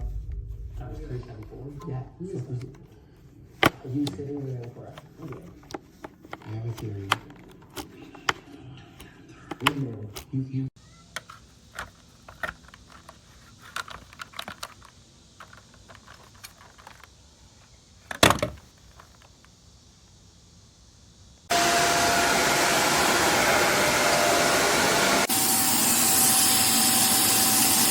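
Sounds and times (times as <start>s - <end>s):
handling clicks and knocks: 3.6s - 8.4s, 11.1s - 17.2s, 18.0s - 19.5s
vacuum cleaner running: 21.5s - 27.9s.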